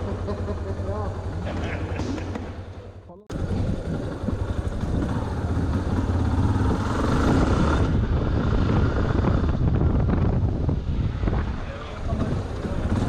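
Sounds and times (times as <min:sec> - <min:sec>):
motorcycle engine running: 0:00.0 - 0:13.0
wind noise on microphone: 0:03.3 - 0:13.0.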